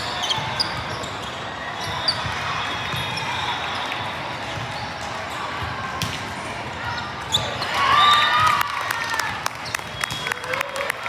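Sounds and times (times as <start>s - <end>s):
sneaker squeak: 0.0s - 6.2s, 6.8s - 7.6s
hubbub of a busy gym hall: 0.0s - 11.0s.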